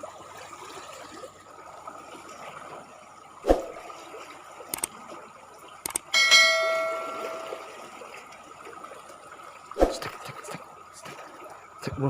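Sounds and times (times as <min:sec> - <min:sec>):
running water trickling: 0:00.0 - 0:12.0
light clicks: 0:04.7 - 0:04.9, 0:05.8 - 0:06.1
metal object ringing bell-like: 0:06.2 - 0:07.9.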